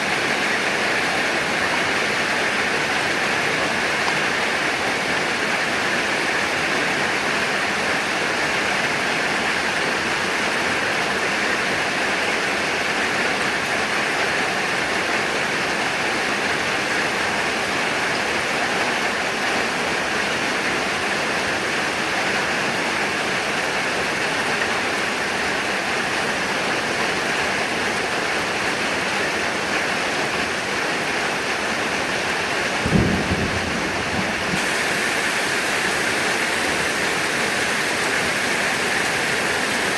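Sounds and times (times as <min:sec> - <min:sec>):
heavy rain falling: 0:00.0 - 0:39.9
low rumble of thunder: 0:32.8 - 0:34.7.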